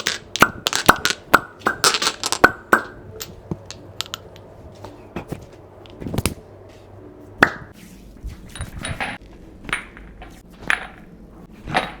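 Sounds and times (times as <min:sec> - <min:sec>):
cups clicking and clinking: 0:00.0 - 0:04.9.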